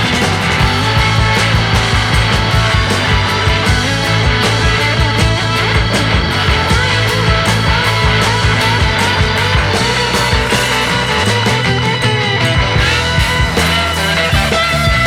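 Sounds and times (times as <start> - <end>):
bass line: 0.0 - 15.0
rock music with guitar: 0.0 - 15.0
steady drum beat: 0.0 - 15.0.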